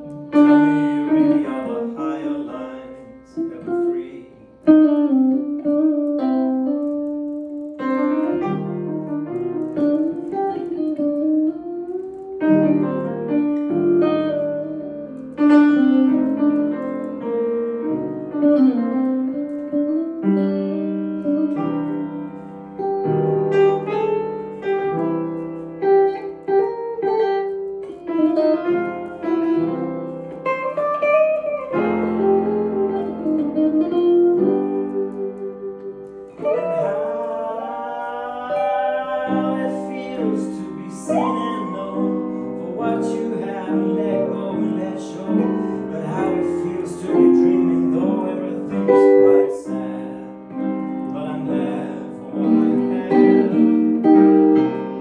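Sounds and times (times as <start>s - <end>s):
piano chords over bass line: 0.0s - 55.0s.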